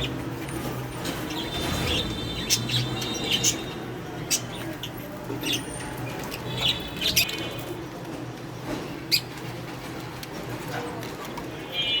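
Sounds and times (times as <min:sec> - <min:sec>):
budgerigars chirping: 0:01.1 - 0:05.6, 0:06.2 - 0:07.5.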